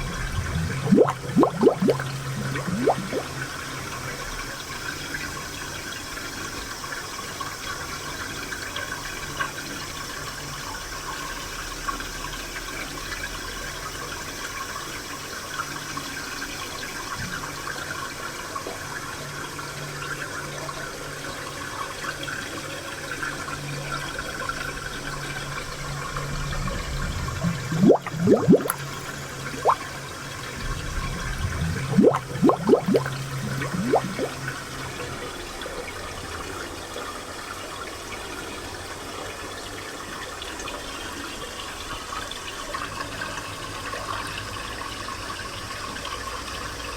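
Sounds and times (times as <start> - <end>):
spring water running: 0.0 - 6.0, 26.8 - 35.0
water gurgling: 0.0 - 6.3, 24.6 - 36.8.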